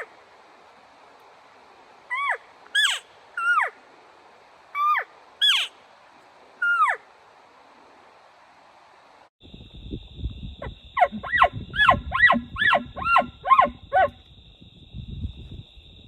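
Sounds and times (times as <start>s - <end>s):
animal yelping: 2.1s - 3.8s, 4.8s - 5.7s, 6.6s - 7.0s, 11.0s - 14.1s.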